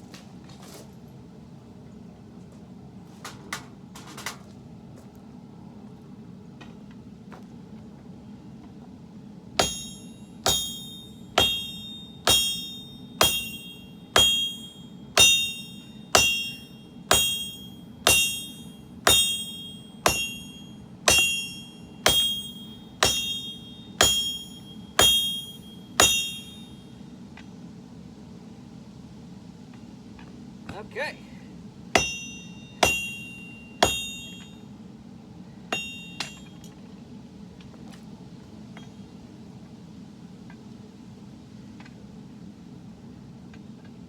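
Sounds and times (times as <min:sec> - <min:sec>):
hammer striking blade on anvil: 0:09.6 - 0:26.9, 0:32.0 - 0:34.6, 0:35.7 - 0:36.7.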